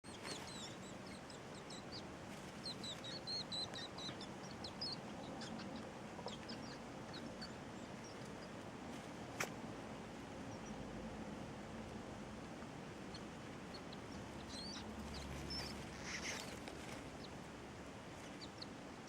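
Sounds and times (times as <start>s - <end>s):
baby rats squeaking: 0.0s - 8.7s, 10.4s - 10.9s, 13.0s - 17.5s, 18.2s - 18.8s.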